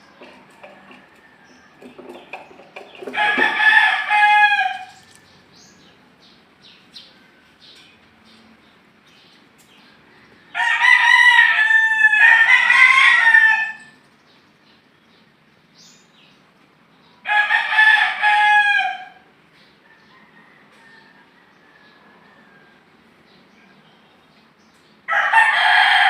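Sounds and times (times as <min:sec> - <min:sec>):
rooster crowing: 0:03.0 - 0:05.2, 0:10.0 - 0:14.0, 0:17.2 - 0:22.9, 0:25.1 - 0:26.0.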